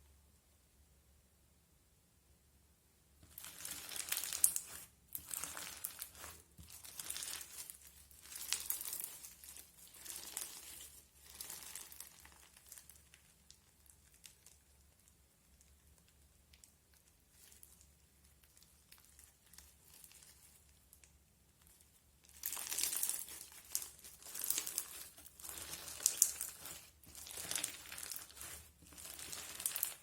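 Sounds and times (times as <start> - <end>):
crunchy slime crackling: 3.2 - 14.8, 22.3 - 30.0.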